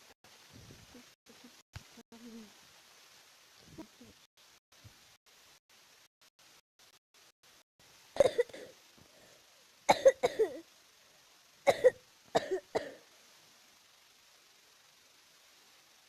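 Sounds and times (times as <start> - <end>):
person coughing: 8.2 - 8.7, 9.9 - 10.6, 11.7 - 13.0.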